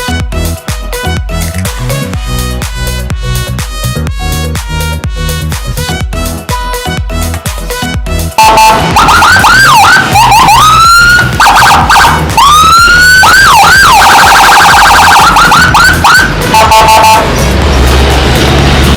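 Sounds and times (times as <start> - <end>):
electronic vehicle siren: 8.4 - 17.3.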